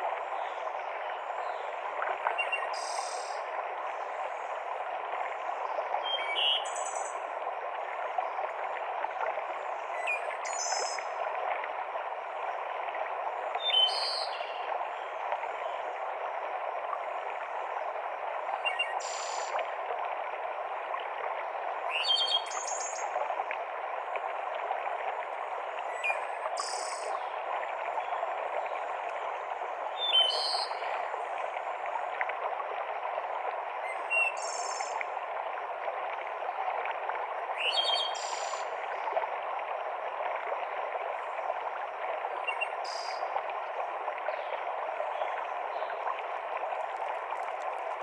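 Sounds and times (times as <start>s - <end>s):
stream rushing: 23.0s - 48.0s
songbirds calling: 30.0s - 31.0s, 37.6s - 38.6s.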